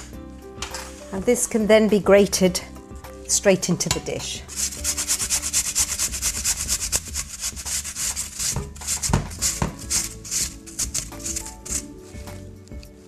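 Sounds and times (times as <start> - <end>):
apple rasping on a grater: 4.5 - 12.3.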